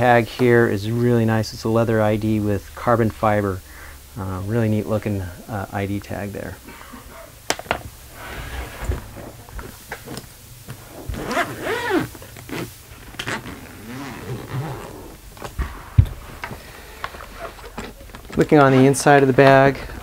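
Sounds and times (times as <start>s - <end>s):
suitcase zipper being pulled: 10.9s - 15.2s.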